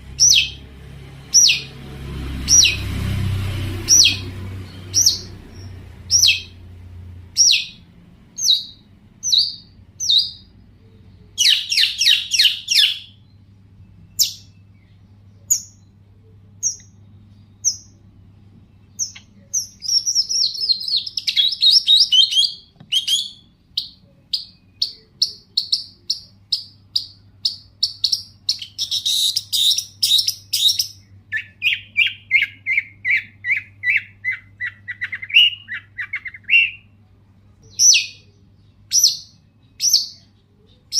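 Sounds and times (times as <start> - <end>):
shrike singing: 0.0 - 18.1, 18.7 - 37.0.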